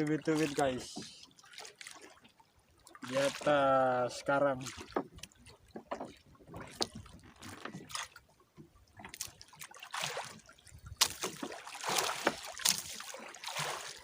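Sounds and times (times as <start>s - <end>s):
water splashing and trickling: 0.0s - 14.0s
small clicks and knocks: 5.0s - 7.8s.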